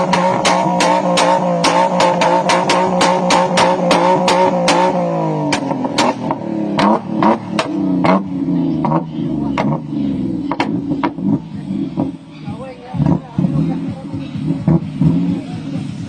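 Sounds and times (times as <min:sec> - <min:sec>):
loud sharp cracks: 0:00.0 - 0:07.8
engine revving: 0:00.0 - 0:16.0.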